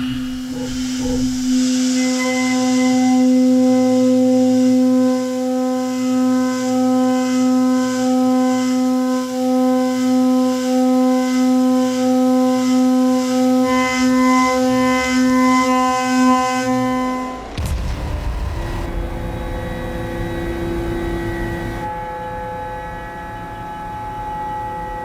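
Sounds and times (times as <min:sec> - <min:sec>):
low rumble: 0:17.6 - 0:23.0.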